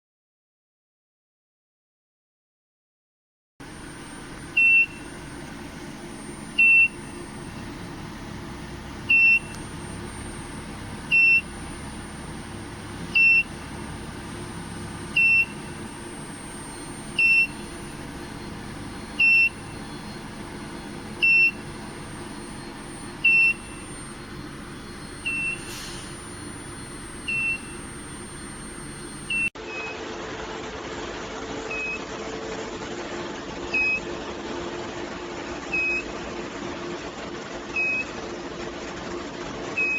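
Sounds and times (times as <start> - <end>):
thin high whine: 3.6 - 29.5
electrical hum: 3.6 - 29.6
short high beeps: 3.8 - 5.3, 6.1 - 7.9, 9.0 - 11.6, 13.1 - 29.9.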